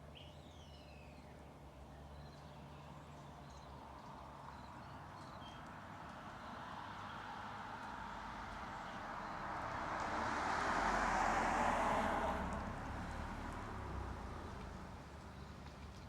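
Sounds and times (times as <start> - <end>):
vehicle passing by: 6.2 - 15.7.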